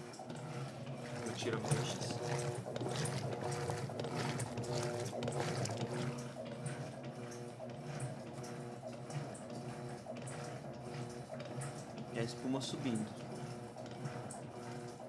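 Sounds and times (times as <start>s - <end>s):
washing machine motor hum: 0.0s - 15.0s
water sloshing in tub: 1.2s - 6.4s.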